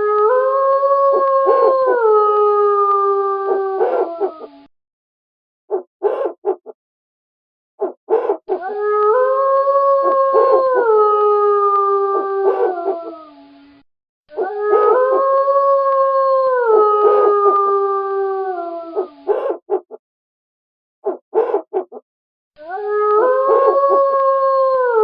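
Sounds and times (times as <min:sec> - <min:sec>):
wolves howling: 0:00.0 - 0:04.7, 0:08.1 - 0:13.5, 0:14.3 - 0:19.9, 0:21.4 - 0:21.8, 0:22.6 - 0:25.0
wolves yipping: 0:01.5 - 0:01.8, 0:03.8 - 0:04.5, 0:05.7 - 0:06.8, 0:07.8 - 0:08.7, 0:12.4 - 0:13.1, 0:19.0 - 0:20.0, 0:21.0 - 0:22.0, 0:23.4 - 0:23.8.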